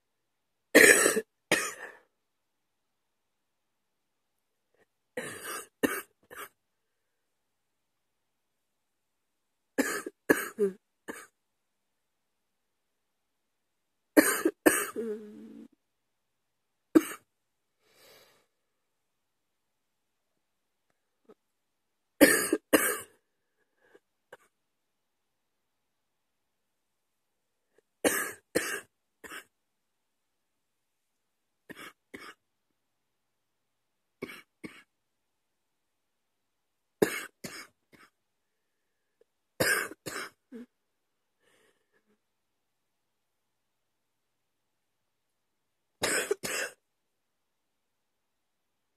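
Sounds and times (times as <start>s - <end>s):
woman coughing: 0.8s - 2.0s, 5.2s - 6.6s, 9.8s - 11.3s, 14.2s - 15.2s, 17.0s - 17.2s, 22.2s - 23.2s, 39.6s - 40.7s, 46.0s - 46.8s.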